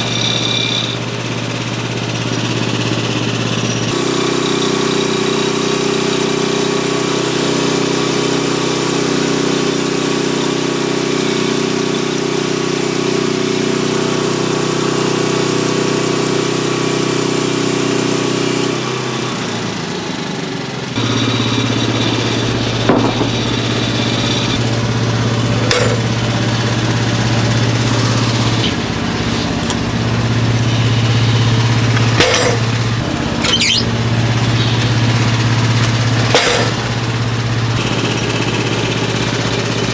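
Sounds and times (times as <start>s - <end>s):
sawmill engine running: 0.0s - 39.9s
sharp knocks: 22.1s - 24.6s.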